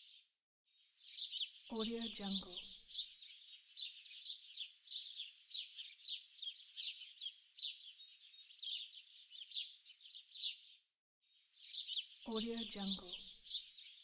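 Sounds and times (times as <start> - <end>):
songbirds chirping: 0.0 - 14.0.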